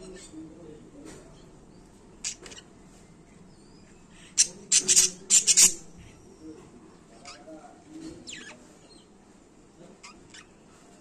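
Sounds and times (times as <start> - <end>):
lovebirds chirping: 1.3 - 7.6.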